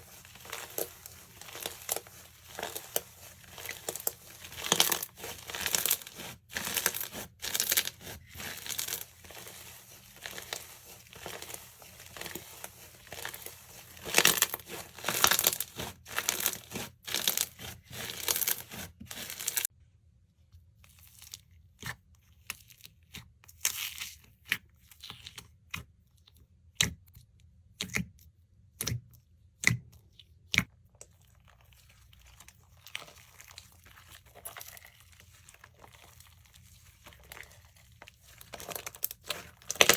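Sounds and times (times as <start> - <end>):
slime crackling and popping: 0.1 - 19.7, 38.3 - 39.9.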